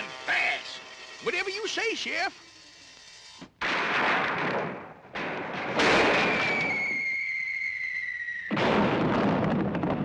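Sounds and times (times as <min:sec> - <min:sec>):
falling whistle: 0:06.2 - 0:08.6.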